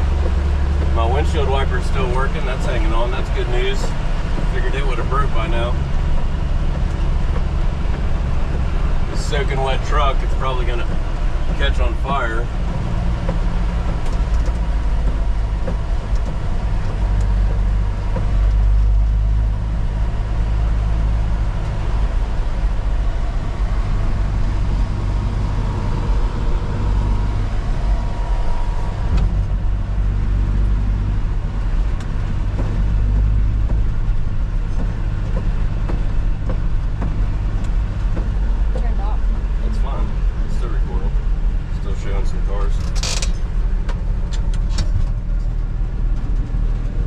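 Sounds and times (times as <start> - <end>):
engine and road rumble: 0.0 - 47.0.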